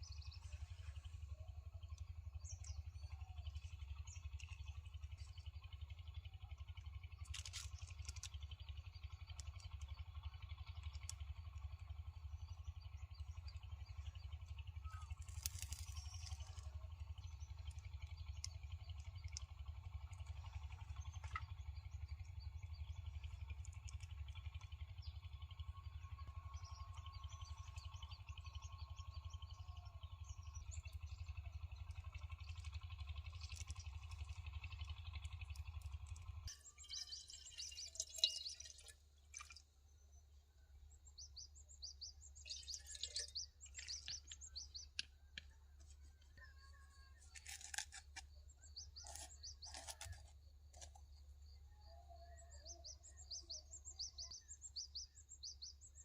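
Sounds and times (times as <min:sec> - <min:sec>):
small birds chirping: 0:00.0 - 0:56.0.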